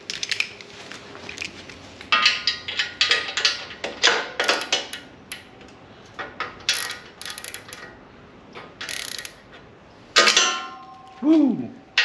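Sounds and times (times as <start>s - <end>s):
socket wrench ratchet clicking: 6.7s - 7.9s, 8.8s - 9.4s.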